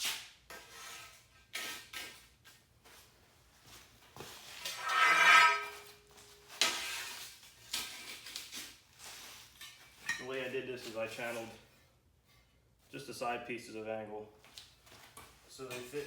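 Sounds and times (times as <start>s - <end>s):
steel angle clanking: 4.7s - 5.9s.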